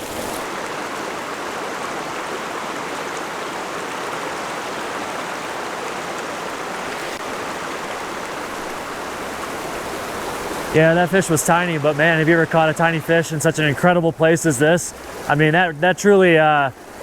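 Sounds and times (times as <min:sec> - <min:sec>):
creek water flowing: 0:00.0 - 0:17.0.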